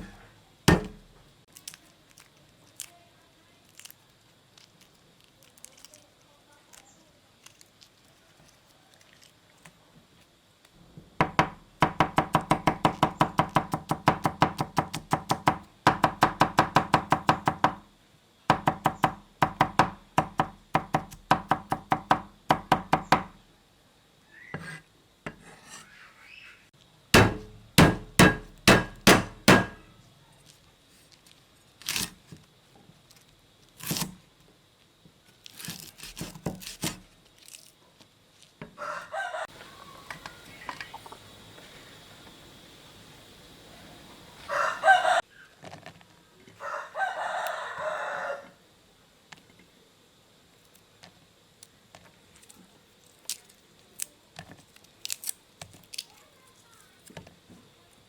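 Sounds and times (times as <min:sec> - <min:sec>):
knife chopping on wooden board: 0:00.0 - 0:01.1, 0:11.2 - 0:17.8, 0:18.5 - 0:23.4, 0:27.2 - 0:29.8.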